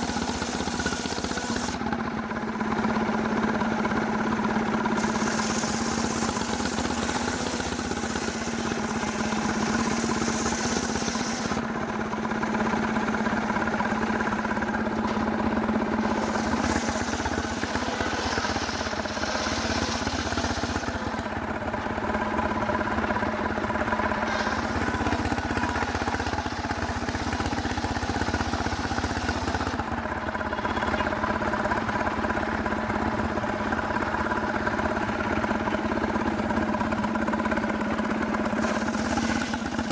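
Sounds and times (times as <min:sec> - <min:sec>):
hissy saw cutting sound: 0:00.0 - 0:01.8, 0:05.0 - 0:11.6, 0:15.8 - 0:21.4, 0:24.1 - 0:29.8, 0:38.4 - 0:39.9
engine-driven sawmill running: 0:00.0 - 0:39.9.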